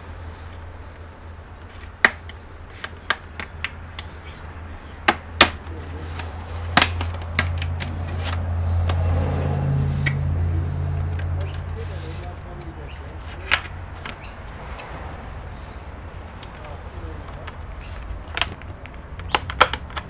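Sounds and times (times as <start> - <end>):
sharp clicks and taps: 1.6 - 4.2, 4.9 - 9.4, 13.3 - 14.9, 16.4 - 20.0.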